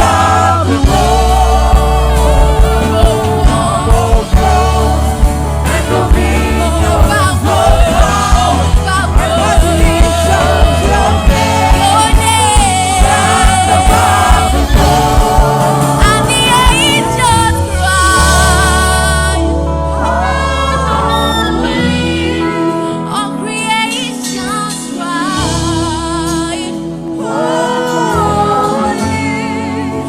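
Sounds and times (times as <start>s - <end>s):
steady drum beat: 0.0s - 18.6s
bass: 0.0s - 30.0s
choir singing with vibrato: 0.0s - 30.0s.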